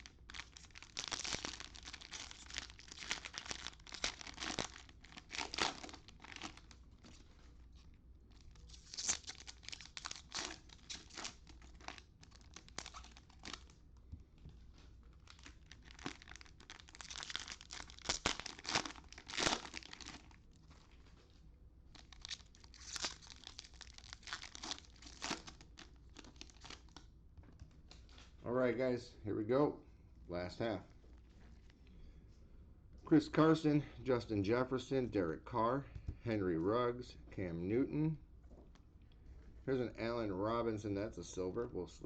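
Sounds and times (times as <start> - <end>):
cellophane crinkling and tearing: 0.0 - 7.6, 8.3 - 13.8, 15.1 - 21.2, 21.9 - 27.0.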